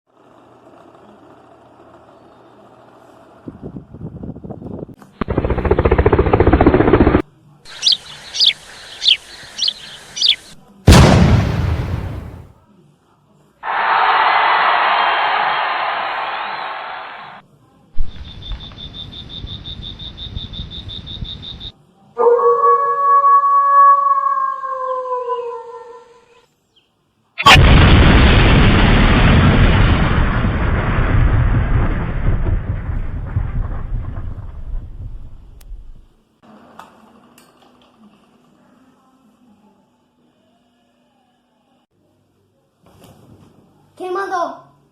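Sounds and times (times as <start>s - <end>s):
loud rapid pulsing noise: 5.2s - 7.2s
bird chirping: 7.7s - 10.6s, 18.0s - 21.7s
explosion blast: 10.9s - 12.5s, 27.4s - 36.1s
deep rumble: 27.5s - 36.1s.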